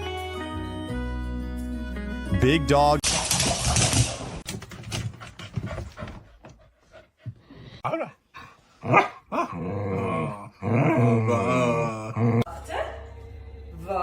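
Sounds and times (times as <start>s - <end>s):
dog barking: 8.8s - 9.6s
dog growling: 8.8s - 12.5s.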